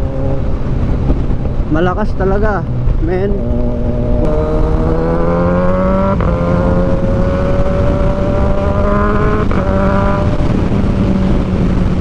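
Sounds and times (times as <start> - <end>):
wind rush on microphone: 0.0 - 12.0
motorcycle engine revving hard: 3.2 - 12.0.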